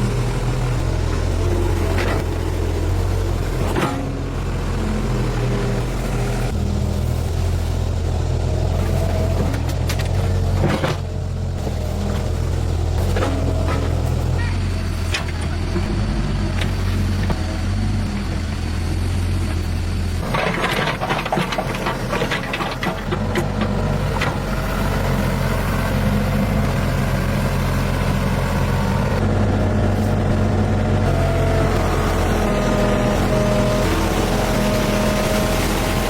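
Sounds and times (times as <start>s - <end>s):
vehicle engine running: 0.0s - 36.0s.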